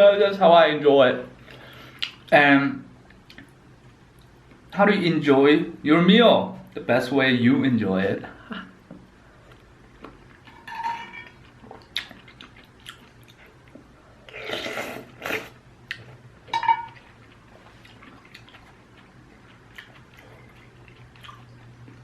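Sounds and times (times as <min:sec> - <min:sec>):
person chewing noodles: 0:09.3 - 0:10.6, 0:11.2 - 0:16.2, 0:16.9 - 0:22.0.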